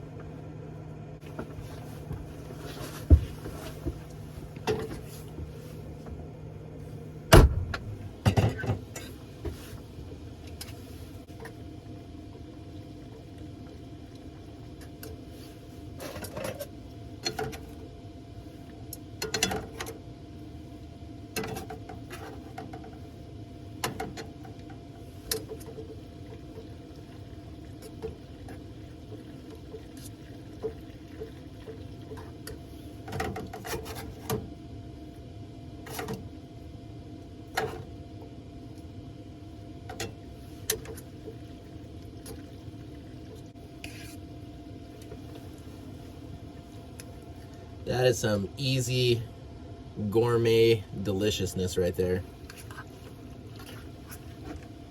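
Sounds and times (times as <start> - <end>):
steady low hum: 0.0 - 54.9.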